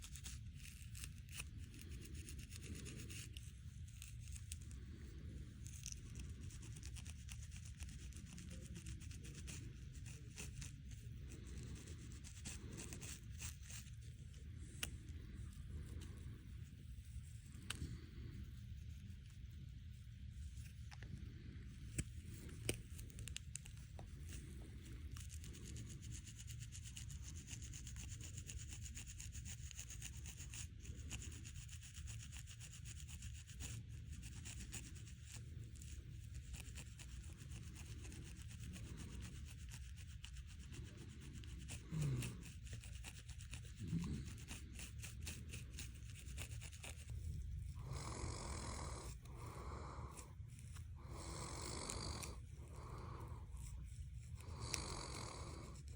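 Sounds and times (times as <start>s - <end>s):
fingernails scratching scalp: 0.0s - 55.9s
loud snoring: 47.8s - 49.9s, 51.0s - 53.0s, 54.5s - 55.8s.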